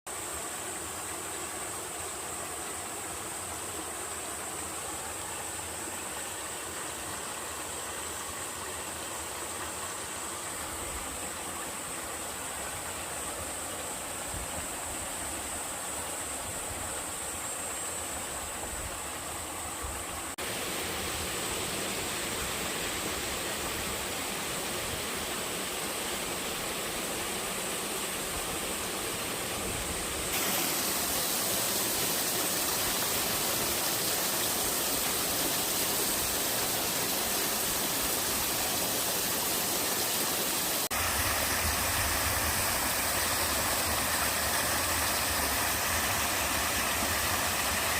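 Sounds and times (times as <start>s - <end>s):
waterfalls rushing: 20.3s - 47.9s.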